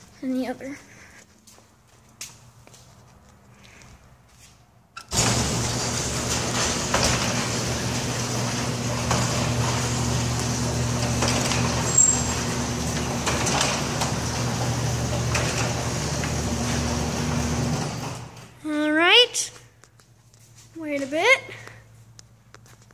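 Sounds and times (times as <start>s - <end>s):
garage door opener motor hum: 5.0s - 18.6s
chain and door rattling: 11.2s - 12.6s.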